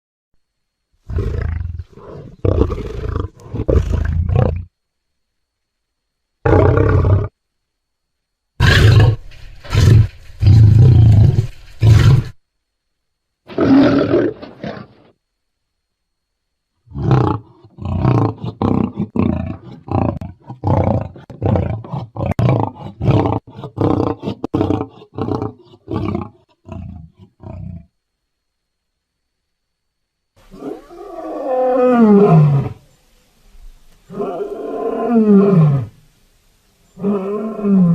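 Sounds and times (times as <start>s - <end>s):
lion grunting roars: 1.1s - 4.7s, 16.9s - 27.9s
lion roaring: 1.1s - 4.7s, 6.4s - 7.4s, 8.6s - 12.4s, 13.5s - 15.1s, 16.9s - 27.9s, 30.5s - 32.8s, 34.1s - 36.0s, 37.0s - 37.9s.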